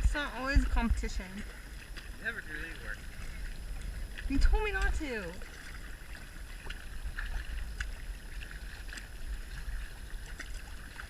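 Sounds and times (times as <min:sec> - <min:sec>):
paddle splashes and drips: 0:00.0 - 0:11.0
steady water hiss: 0:00.0 - 0:11.0
wind rumble on microphone: 0:00.0 - 0:11.0.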